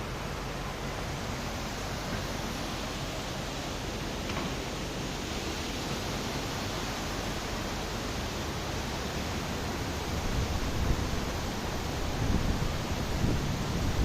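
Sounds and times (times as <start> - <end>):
steady rushing outdoor noise: 0.0 - 14.0
wind buffeting microphone: 9.9 - 14.0.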